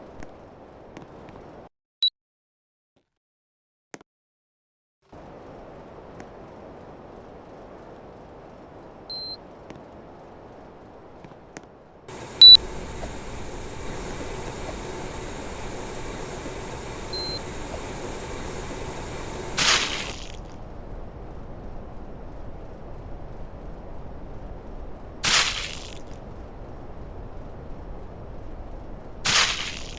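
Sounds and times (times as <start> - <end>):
air conditioner beeping: 12.1 - 20.2
air conditioner fan humming: 12.1 - 20.2
rush of air: 12.1 - 20.2
thin high whine: 12.1 - 20.2.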